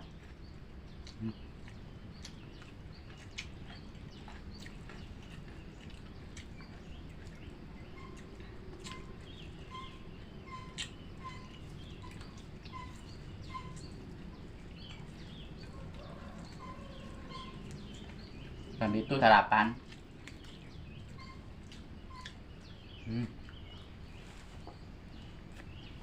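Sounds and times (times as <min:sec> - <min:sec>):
birds chirping: 0:00.0 - 0:26.0
low background hum: 0:00.0 - 0:26.0.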